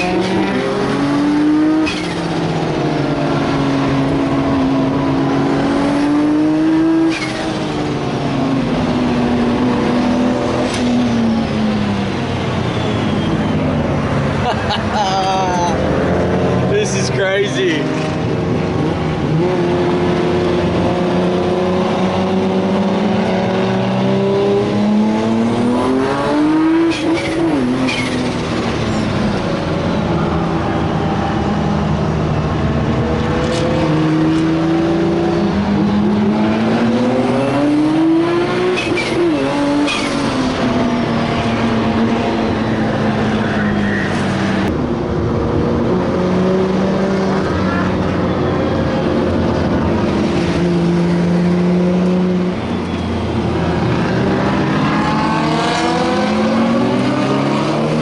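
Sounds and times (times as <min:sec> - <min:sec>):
car engine accelerating hard: 0:13.6 - 0:58.0.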